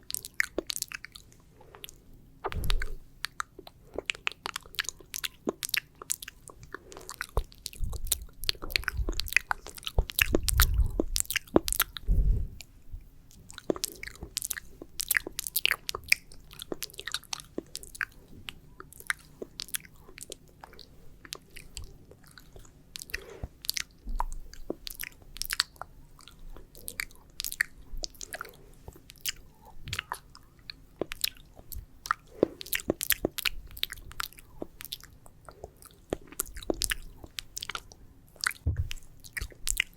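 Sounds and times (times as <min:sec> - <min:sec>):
wet saliva mouth clicks: 0:00.1 - 0:12.1
low rumbling swells: 0:12.0 - 0:12.6.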